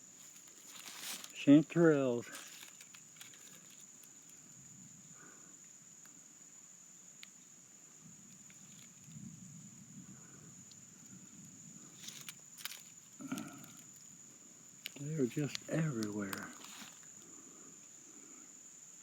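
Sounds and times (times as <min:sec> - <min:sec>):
rustling through undergrowth: 0:00.0 - 0:04.6, 0:08.2 - 0:09.4, 0:10.6 - 0:17.8.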